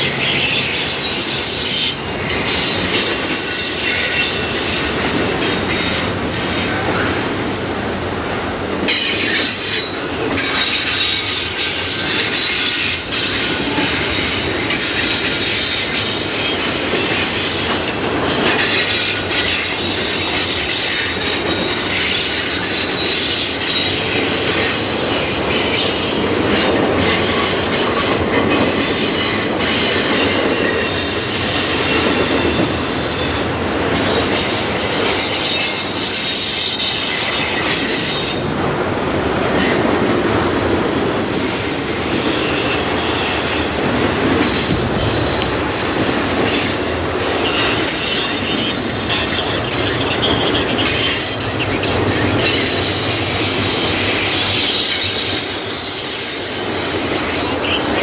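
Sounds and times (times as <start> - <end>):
train wheels squealing: 0.0 - 38.6, 40.9 - 58.0
train wheels rumbling and clattering: 0.0 - 58.0.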